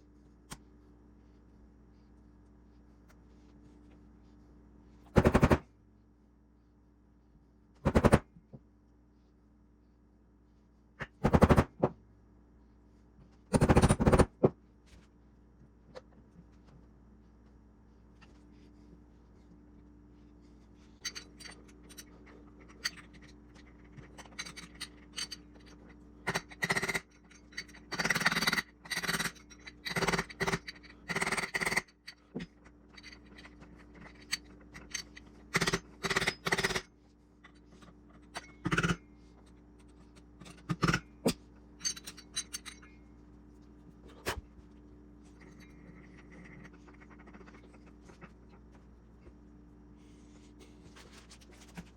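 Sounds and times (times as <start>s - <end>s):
faint steady hum: 0.0s - 51.9s
hand tools scraping and clinking metal: 21.0s - 36.8s, 37.4s - 42.9s.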